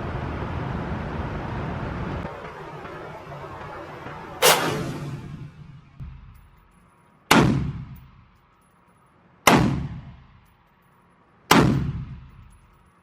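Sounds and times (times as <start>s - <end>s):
gunshots with echo: 4.4s - 6.0s.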